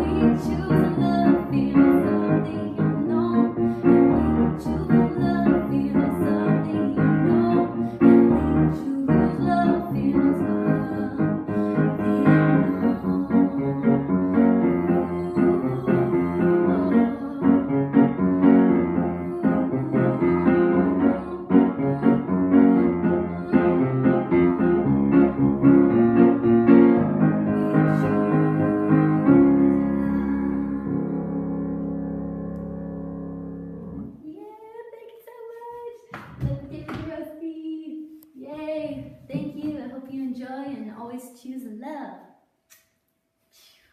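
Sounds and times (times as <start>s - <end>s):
piano playing reggae chords: 0.0s - 34.2s.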